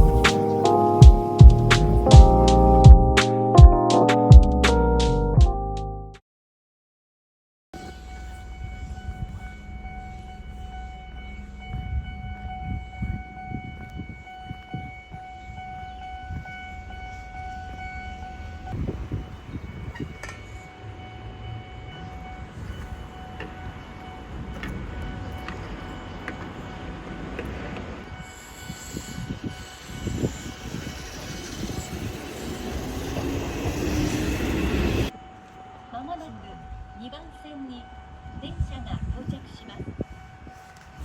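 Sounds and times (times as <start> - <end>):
train rushing rumble: 0.0 - 2.8, 16.2 - 35.2
electric train whine: 0.0 - 2.9, 7.8 - 41.0.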